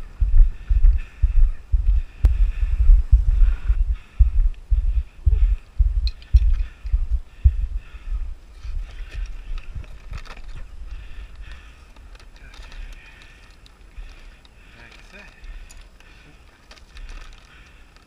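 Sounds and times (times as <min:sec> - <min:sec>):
footsteps thudding: 0:00.0 - 0:10.0.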